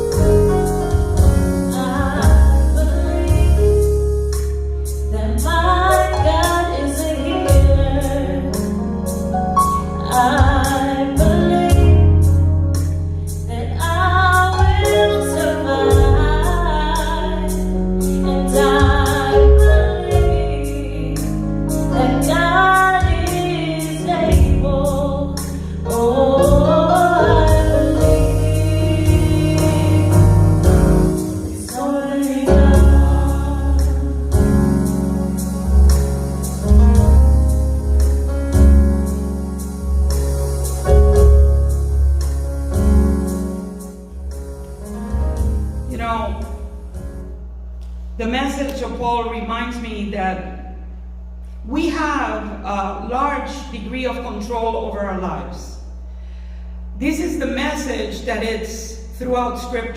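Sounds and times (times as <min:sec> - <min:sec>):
bass and steady beat: 0:00.0 - 0:48.7
voices singing gospel song: 0:21.9 - 0:35.5.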